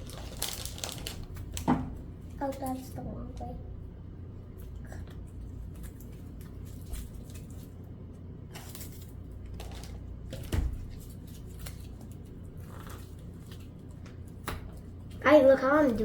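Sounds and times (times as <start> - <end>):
foam pieces rustling and clicking: 0.0 - 1.7.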